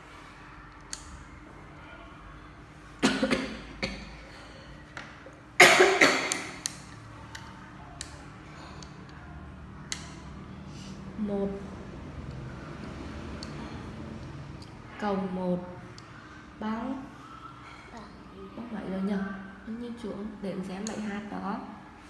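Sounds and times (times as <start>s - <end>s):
light clicks of abacus beads: 0.7s - 1.4s, 6.3s - 10.4s, 12.2s - 14.8s.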